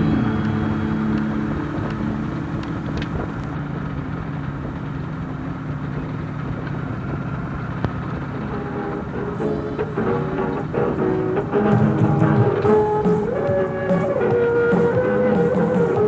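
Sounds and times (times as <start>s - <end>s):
motorcycle engine running: 0.0s - 16.0s
road and wind noise: 0.0s - 16.0s.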